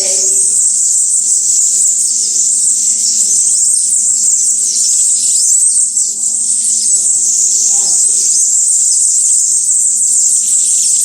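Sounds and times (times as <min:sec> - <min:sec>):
songbirds twittering and chirping: 0:00.0 - 0:11.0.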